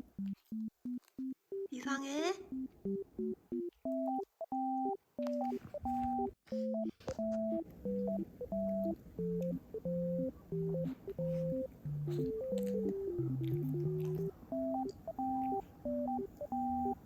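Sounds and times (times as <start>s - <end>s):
electronic beep-like melody: 2.5s - 17.0s.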